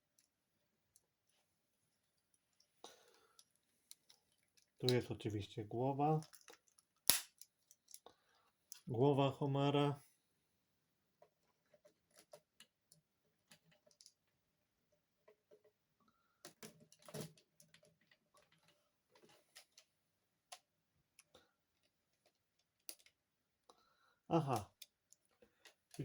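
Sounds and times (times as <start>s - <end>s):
plastic toy parts clicking: 22.6s - 23.2s.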